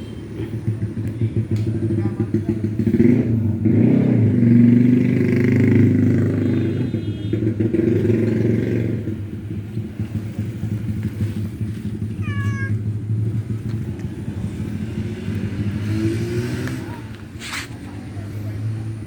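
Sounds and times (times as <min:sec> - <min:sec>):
low motor rumble: 0:09.3 - 0:15.8
cat meowing: 0:12.1 - 0:12.9.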